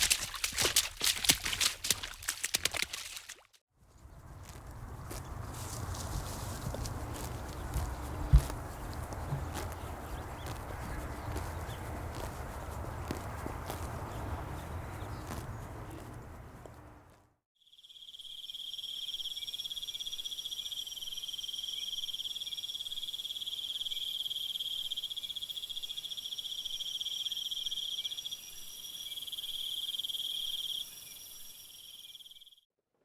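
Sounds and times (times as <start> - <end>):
crickets chirping: 4.4 - 15.2, 17.8 - 32.6.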